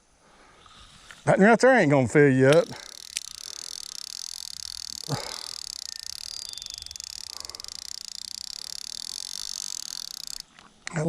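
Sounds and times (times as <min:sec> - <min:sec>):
frogs trilling: 0:02.5 - 0:11.0.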